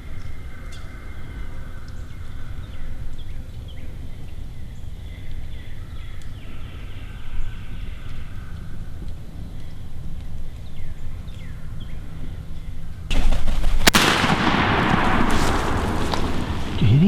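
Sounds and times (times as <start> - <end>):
birds chirping and calling: 0.0 - 13.1.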